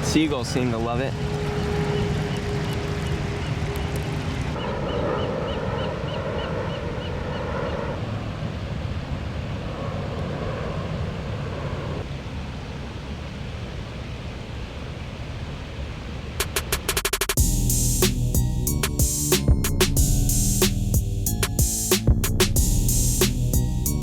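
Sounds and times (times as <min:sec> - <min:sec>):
wind rumble on microphone: 0:00.0 - 0:16.3
rushing water: 0:12.0 - 0:16.8.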